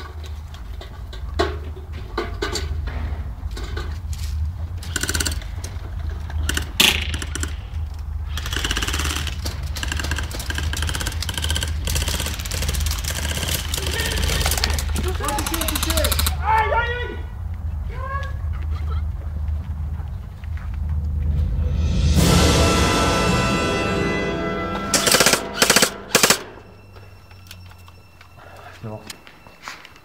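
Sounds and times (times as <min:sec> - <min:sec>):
low rumble: 0:00.4 - 0:13.8, 0:17.2 - 0:28.2
airsoft guns firing bursts: 0:04.8 - 0:05.5, 0:06.4 - 0:16.4, 0:25.0 - 0:26.5
sharp clicks: 0:04.8 - 0:16.4.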